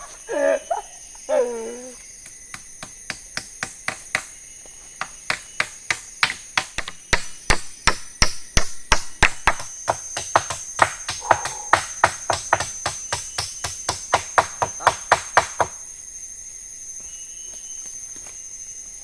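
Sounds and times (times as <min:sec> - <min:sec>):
tool striking wood: 0:02.2 - 0:04.4, 0:05.0 - 0:15.8.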